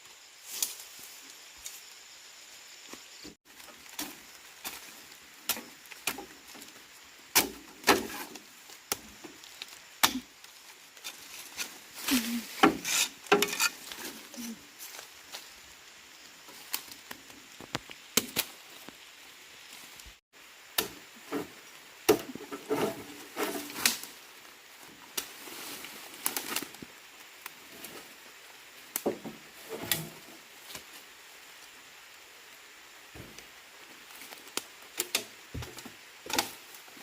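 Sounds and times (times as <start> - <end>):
hand tools knocking and scraping: 12.4 - 14.2.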